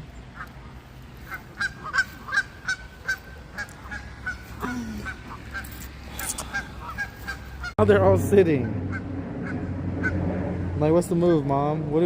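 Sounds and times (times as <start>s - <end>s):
waterfowl honking calls: 0.0s - 7.8s, 8.6s - 10.3s.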